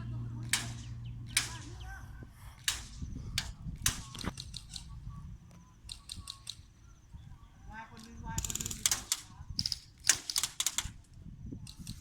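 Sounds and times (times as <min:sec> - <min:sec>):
airsoft gun shots: 0:00.4 - 0:01.8.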